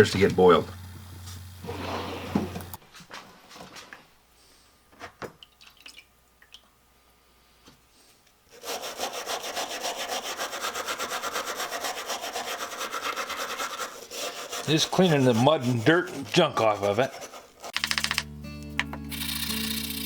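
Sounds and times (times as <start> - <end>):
scrubbing on a wrench: 12.3 - 20.0.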